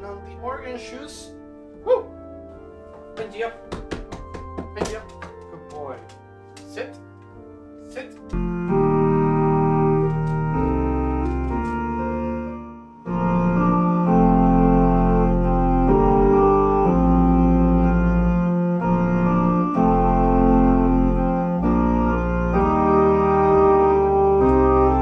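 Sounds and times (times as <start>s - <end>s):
electronic organ chords: 0.0s - 25.0s
deep pedal bass notes: 8.3s - 25.0s.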